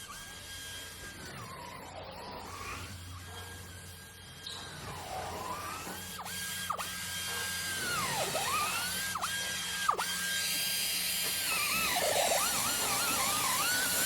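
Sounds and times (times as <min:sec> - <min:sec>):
electric drill motor whining: 0:00.0 - 0:14.0.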